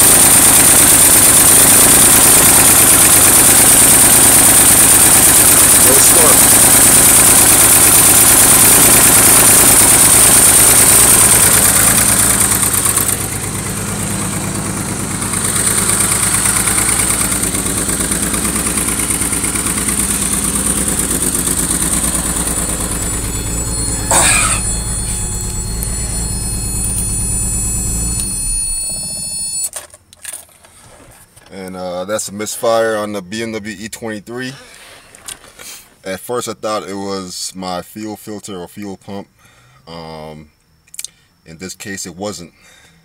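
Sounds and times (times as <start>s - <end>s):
car engine idling rough: 0.0s - 29.6s.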